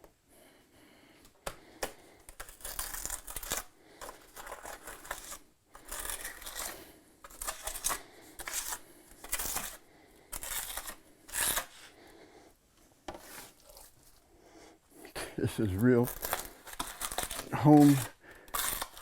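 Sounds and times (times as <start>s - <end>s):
trowel scraping mortar: 2.4s - 12.0s, 13.1s - 14.0s, 15.5s - 19.0s.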